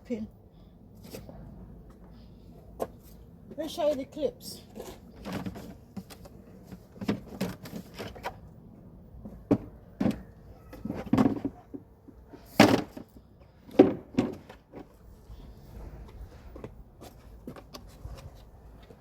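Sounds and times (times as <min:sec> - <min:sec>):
hard plastic parts clattering: 0:04.8 - 0:08.4, 0:09.5 - 0:11.8.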